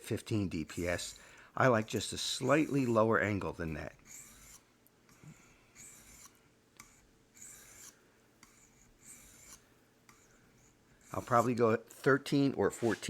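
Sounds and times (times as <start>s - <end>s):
knife on sharpening stone: 4.1s - 4.7s, 5.8s - 10.3s.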